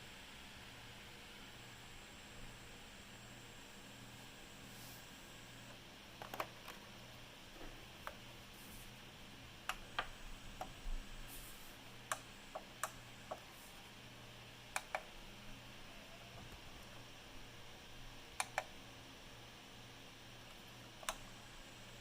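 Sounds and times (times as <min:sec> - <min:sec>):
faint low hum: 0:00.0 - 0:22.0
turntable clicks: 0:12.0 - 0:13.5, 0:14.7 - 0:15.2, 0:18.4 - 0:18.8, 0:20.9 - 0:21.3.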